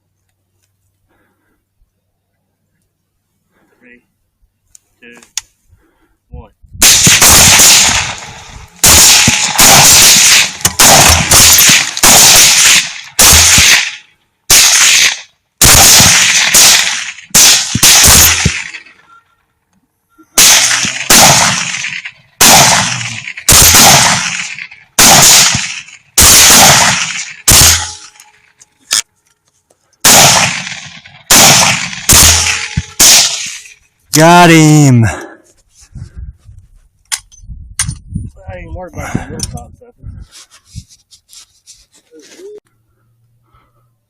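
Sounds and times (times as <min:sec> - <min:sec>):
rapid rifle fire: 0:06.8 - 0:18.9, 0:20.4 - 0:28.0, 0:30.0 - 0:33.7.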